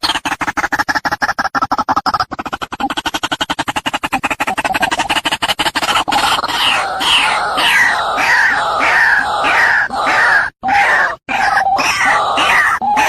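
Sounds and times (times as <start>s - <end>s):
waterhen harsh calls: 5.0s - 13.0s.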